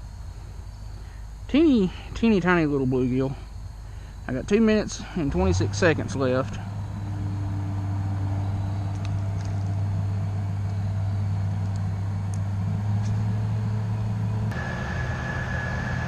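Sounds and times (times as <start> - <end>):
vehicle engine running: 4.7 - 16.0
steady higher tone: 5.2 - 16.0.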